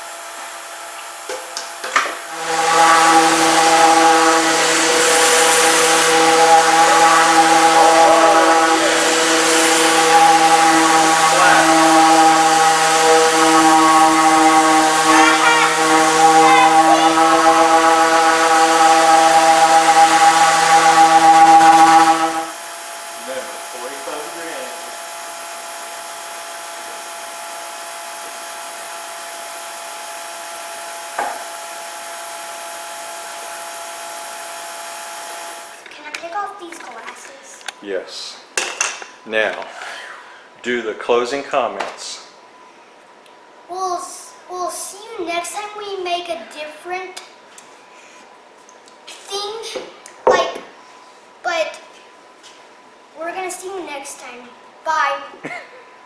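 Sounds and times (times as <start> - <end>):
power tool motor humming: 0.0 - 35.8.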